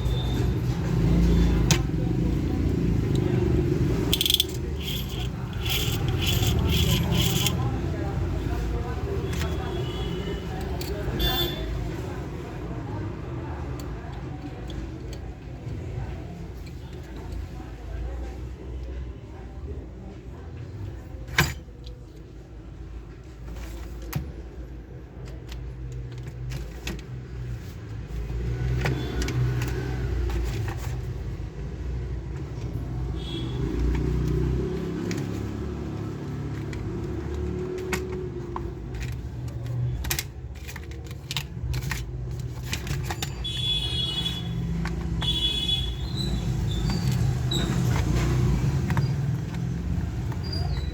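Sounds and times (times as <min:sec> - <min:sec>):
plastic toy parts clattering: 0:03.0 - 0:07.7, 0:36.2 - 0:50.9.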